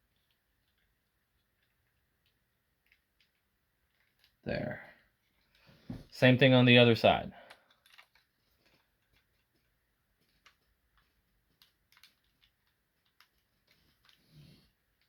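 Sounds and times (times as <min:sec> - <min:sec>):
plastic toy parts clicking: 0:07.5 - 0:14.2.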